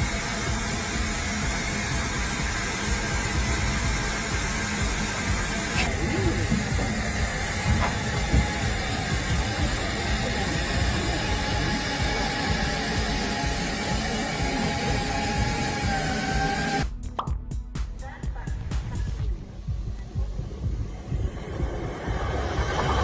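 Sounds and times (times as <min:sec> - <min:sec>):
steam locomotive hissing: 0:00.0 - 0:16.8, 0:18.1 - 0:23.0
low rumble: 0:02.8 - 0:13.2, 0:18.3 - 0:23.0.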